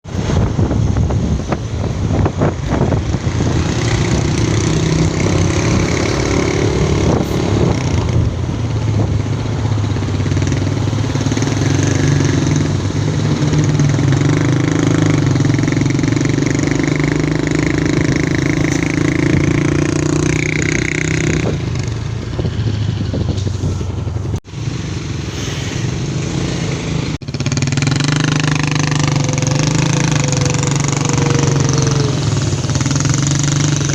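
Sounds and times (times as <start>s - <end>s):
vehicle engine running: 21.2s - 33.9s.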